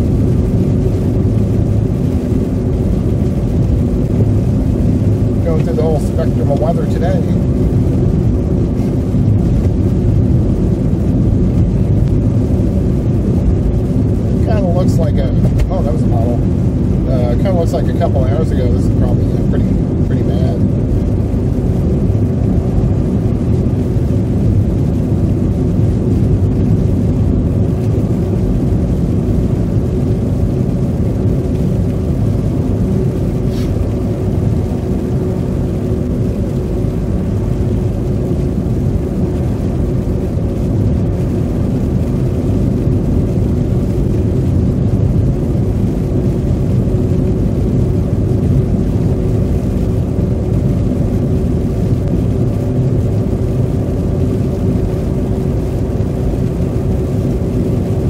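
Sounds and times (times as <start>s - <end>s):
tyre and engine rumble: 0.0s - 58.0s.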